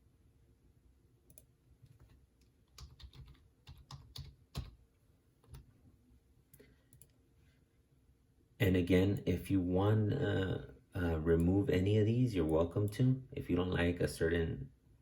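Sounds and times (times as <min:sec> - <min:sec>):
keyboard typing: 0:01.3 - 0:04.8, 0:05.4 - 0:05.7.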